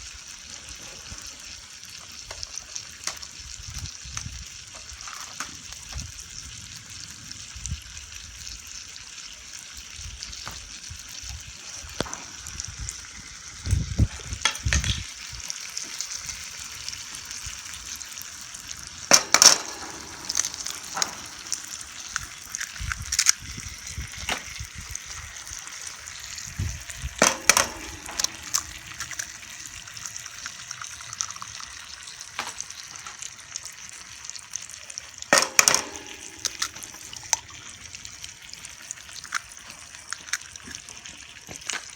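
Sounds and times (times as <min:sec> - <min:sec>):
food sizzling in a pan: 0:00.0 - 0:41.9
sharp knocks and clinks: 0:19.1 - 0:22.0, 0:27.2 - 0:29.3, 0:35.3 - 0:37.4.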